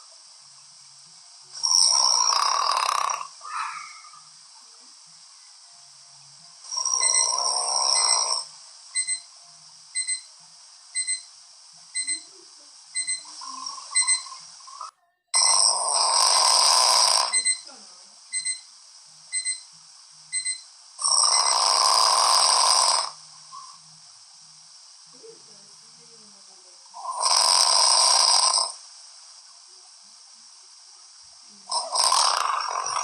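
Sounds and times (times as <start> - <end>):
person snoring: 1.6 - 4.2, 6.6 - 8.5, 13.3 - 17.4, 21.0 - 23.2, 27.0 - 28.8, 31.7 - 33.0
alarm clock beeping: 6.7 - 9.3, 10.0 - 10.3, 11.0 - 11.3, 12.0 - 12.2, 13.0 - 14.5, 15.4 - 17.7, 18.3 - 18.7, 19.3 - 19.7, 20.3 - 22.0.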